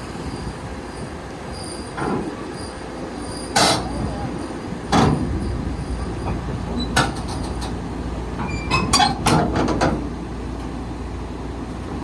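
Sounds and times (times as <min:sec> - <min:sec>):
metal squeals: 0:00.2 - 0:07.0.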